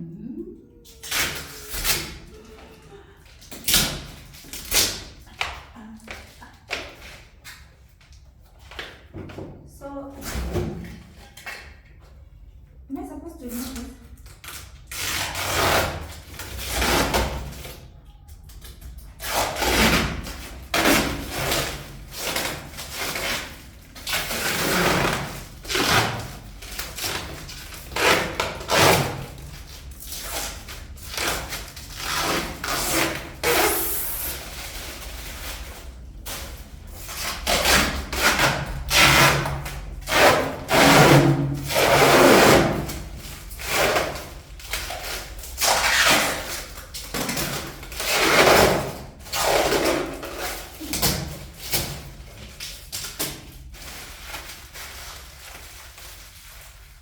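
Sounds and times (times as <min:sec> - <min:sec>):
packaging rustling and tearing: 0:18.5 - 0:57.0.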